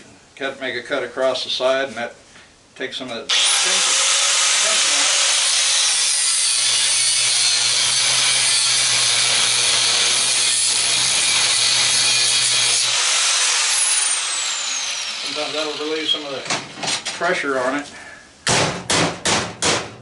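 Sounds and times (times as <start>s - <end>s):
angle grinder cutting metal: 3.3s - 16.4s.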